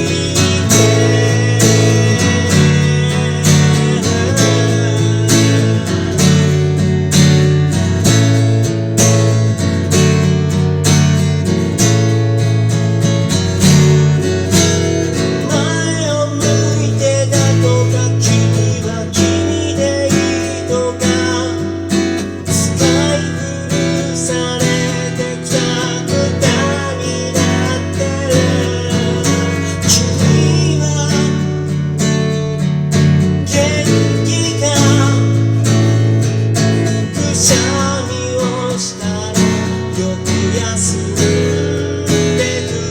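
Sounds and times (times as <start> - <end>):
person singing: 0.0 - 7.0, 37.1 - 42.9
strummed acoustic guitar: 0.0 - 42.9.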